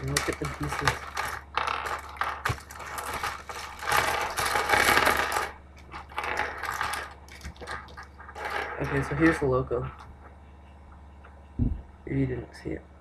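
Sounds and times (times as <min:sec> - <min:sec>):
plastic pieces clattering: 0:00.0 - 0:09.4
plastic bag crinkling: 0:00.0 - 0:09.5.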